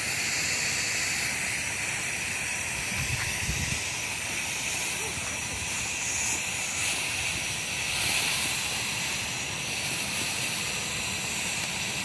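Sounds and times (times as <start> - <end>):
firework hissing: 0.0 - 12.0.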